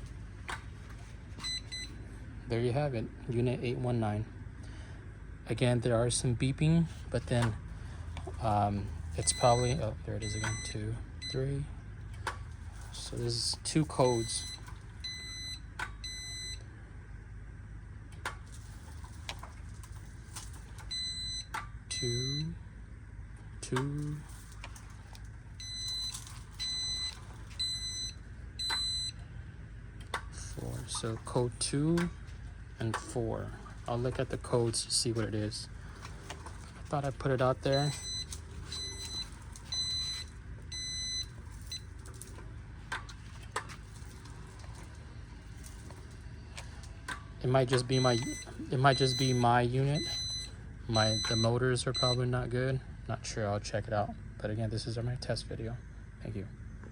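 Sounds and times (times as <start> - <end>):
low hum: 0.0 - 56.9
high-pitched controller beep: 47.8 - 52.2.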